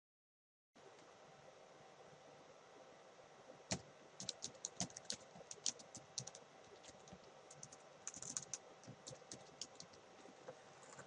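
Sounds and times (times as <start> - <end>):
computer keyboard typing: 3.7 - 10.0.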